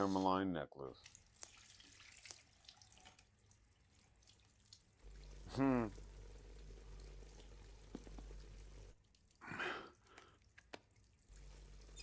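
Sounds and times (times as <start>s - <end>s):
faint steady hum: 5.0s - 9.0s
breathy sigh: 5.5s - 5.9s, 9.4s - 10.2s.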